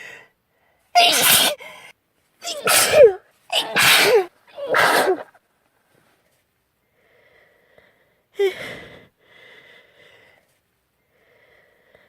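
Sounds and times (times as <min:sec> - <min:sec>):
girl sneezing: 0:01.0 - 0:01.6, 0:02.4 - 0:05.4.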